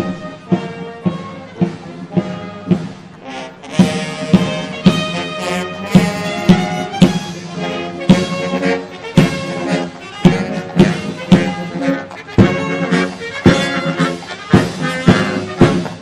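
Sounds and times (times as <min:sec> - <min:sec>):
brass playing: 0:00.0 - 0:16.0
bass drum beat: 0:03.7 - 0:16.0.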